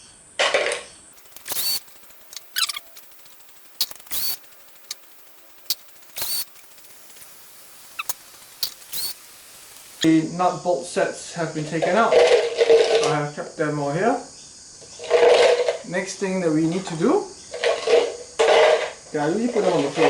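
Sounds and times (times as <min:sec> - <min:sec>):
metal parts clicking and scraping: 0:01.2 - 0:10.1.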